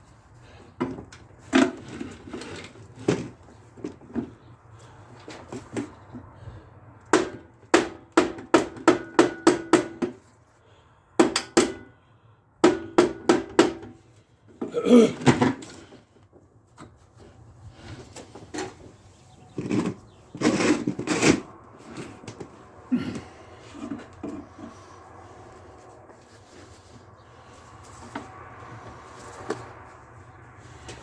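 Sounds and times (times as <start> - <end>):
hammer striking metal: 11.2 - 11.9
short scraping rattle: 18.2 - 22.5.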